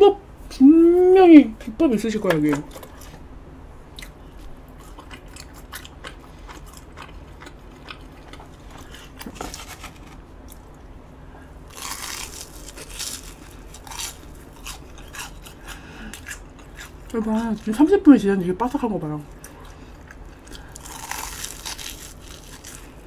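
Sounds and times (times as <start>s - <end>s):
crunching and chewing: 3.9s - 10.9s, 11.6s - 18.0s, 19.3s - 23.0s.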